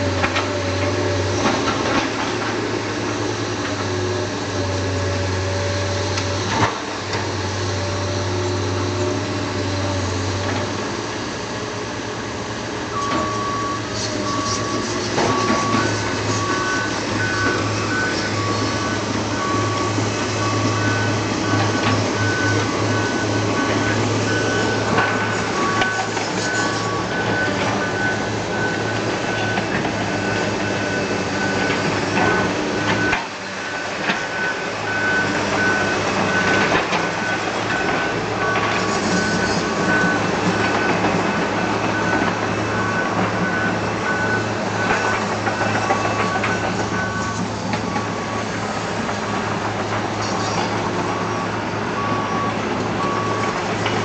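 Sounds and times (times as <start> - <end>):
heavy vehicle engines humming: 0.0 - 54.0
high reversing alarm beeping: 12.9 - 54.0
low reversing alarm beeping: 12.9 - 54.0.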